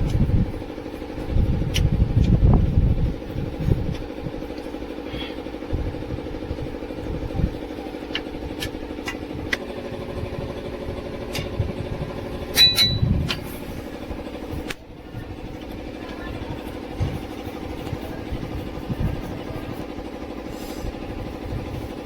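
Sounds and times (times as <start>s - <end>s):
engine idling: 0.0s - 22.0s
metallic clinks of hand tools: 12.5s - 13.0s.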